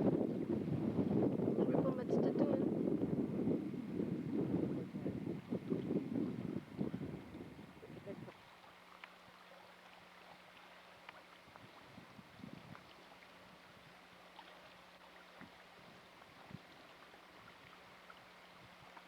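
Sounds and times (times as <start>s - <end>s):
faint ticks: 8.8s - 9.4s, 10.3s - 11.7s, 17.1s - 19.0s.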